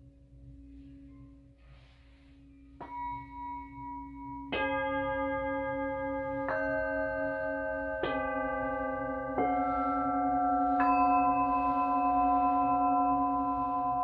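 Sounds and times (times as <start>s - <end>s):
singing bowls ringing: 0.9s - 14.0s.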